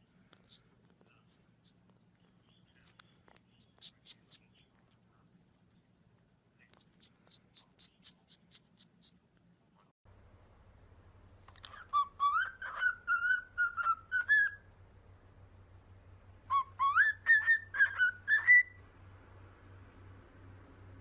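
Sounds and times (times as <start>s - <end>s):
parrot whistling: 11.7s - 14.7s, 16.5s - 18.8s.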